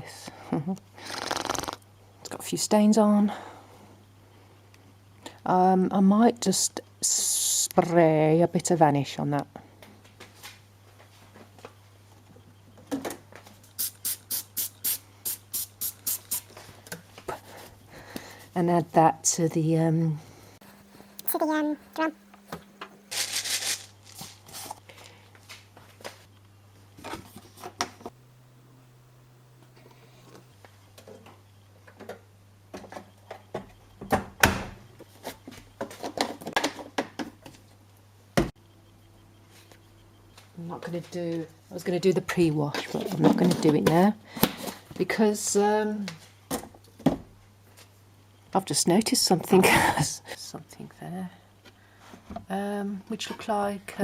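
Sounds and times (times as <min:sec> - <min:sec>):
spray bottle hissing sprays: 0:13.8 - 0:16.5.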